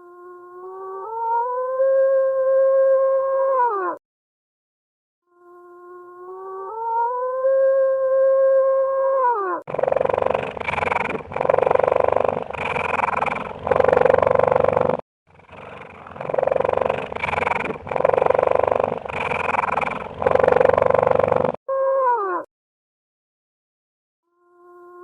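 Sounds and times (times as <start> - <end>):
rough animal calls: 6.6 - 22.5.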